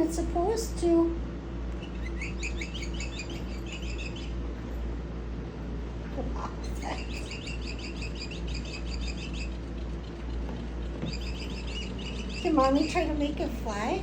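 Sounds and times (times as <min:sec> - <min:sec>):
electronic toy bird chirping: 0:01.8 - 0:04.4, 0:06.7 - 0:13.2.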